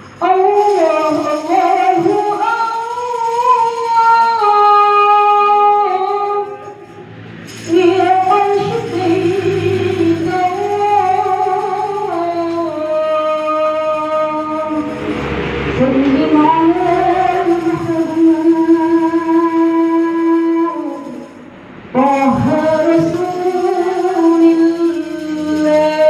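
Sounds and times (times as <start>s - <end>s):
woman singing unaccompanied: 0.0s - 26.0s.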